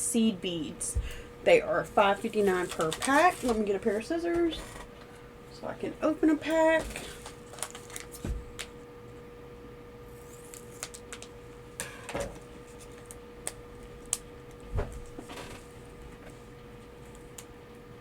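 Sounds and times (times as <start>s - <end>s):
faint steady hum: 0.0s - 18.0s
plastic bag rustling: 1.8s - 4.9s, 6.4s - 8.6s.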